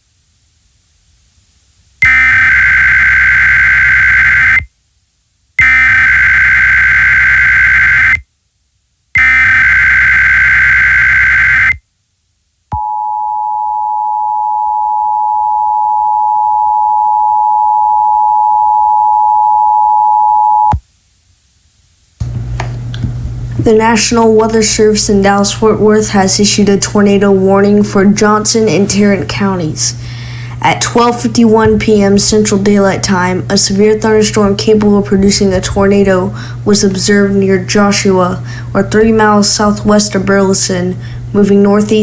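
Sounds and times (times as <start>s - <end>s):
buzzy digital data tones: 2.0s - 4.7s, 9.2s - 11.8s
two-tone attention signal: 12.7s - 20.8s.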